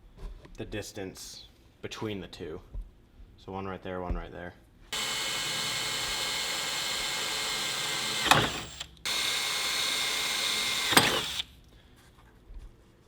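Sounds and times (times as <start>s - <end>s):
power tool motor whine: 5.0s - 11.5s
power tool switch click: 5.0s - 11.5s.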